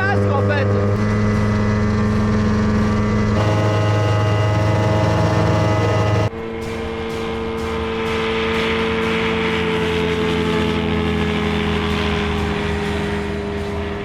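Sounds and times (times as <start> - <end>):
car engine running hard: 0.8 - 6.3
loud harsh exhaust note: 0.8 - 6.3.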